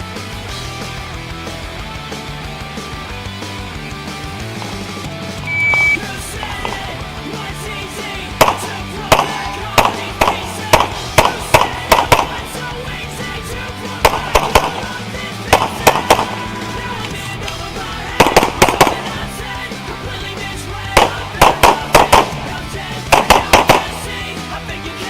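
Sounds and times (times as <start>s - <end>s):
background music with bass: 0.0s - 25.0s
gunshots: 5.5s - 17.2s, 18.0s - 20.2s, 20.9s - 24.2s.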